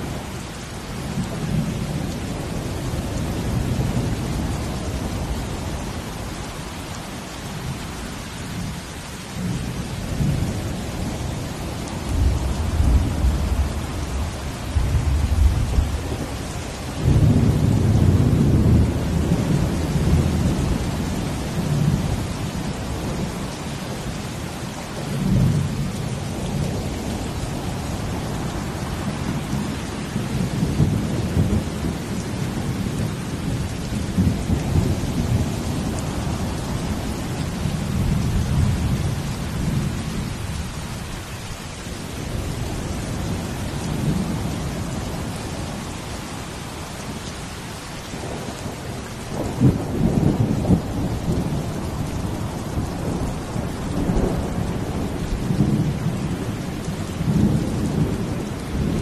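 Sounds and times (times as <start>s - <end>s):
rain hiss: 0.0s - 59.0s.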